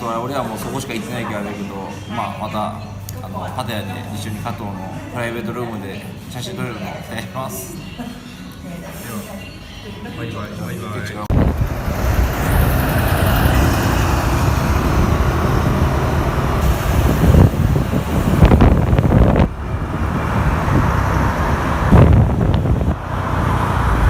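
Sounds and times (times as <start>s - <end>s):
road traffic rumble: 11.3s - 24.0s.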